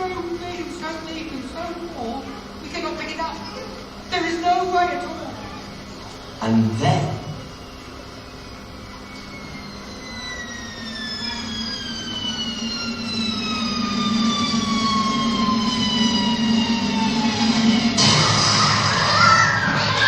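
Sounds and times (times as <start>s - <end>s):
low hum: 0.0s - 20.0s
crowd noise burst: 2.2s - 20.0s
falling whistle: 7.1s - 20.0s.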